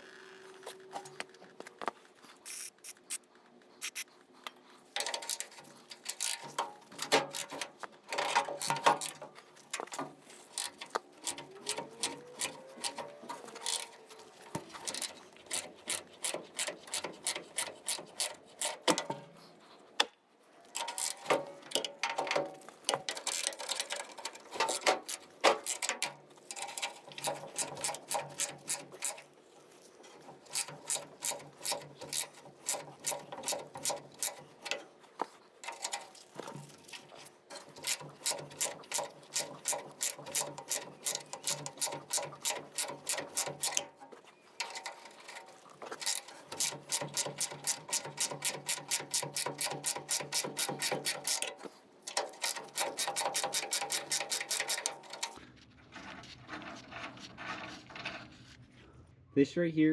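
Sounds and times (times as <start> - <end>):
ratchet wrench clicking: 3.8 - 4.0, 5.0 - 19.1, 20.8 - 29.3, 30.2 - 34.8, 36.9 - 43.9, 44.6 - 55.4.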